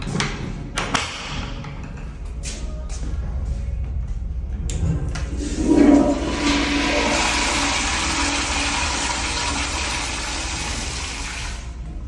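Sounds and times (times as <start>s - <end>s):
toilet flushing: 5.2s - 11.8s.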